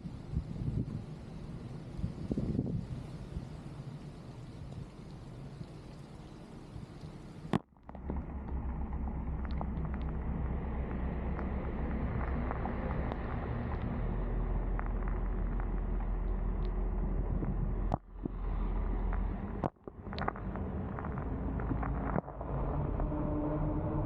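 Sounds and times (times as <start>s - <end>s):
boat engine droning: 7.8s - 24.0s.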